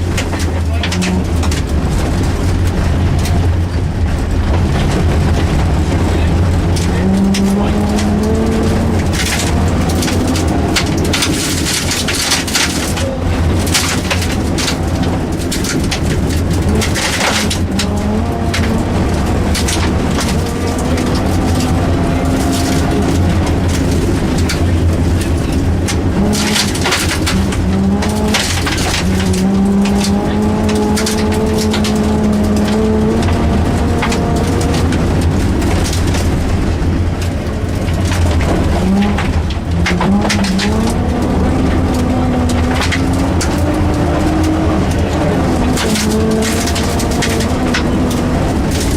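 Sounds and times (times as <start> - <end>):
gravel hitting car underside: 0.0 - 48.9
rally car engine revving: 0.0 - 48.9.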